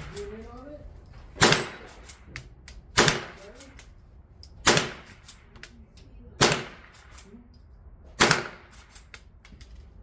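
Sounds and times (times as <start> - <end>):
rifle shots: 1.3 - 2.3, 2.9 - 3.6, 4.6 - 5.4, 6.4 - 7.2, 8.2 - 9.0.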